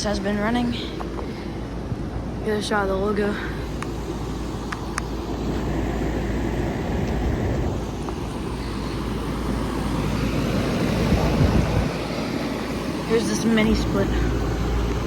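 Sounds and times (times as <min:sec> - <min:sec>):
condenser fans whooshing: 0:00.0 - 0:15.0.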